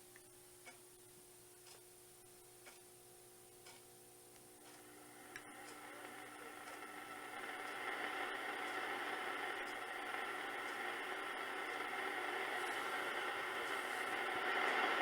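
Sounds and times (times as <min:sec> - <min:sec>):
radio static and hiss: 0:05.1 - 0:15.0.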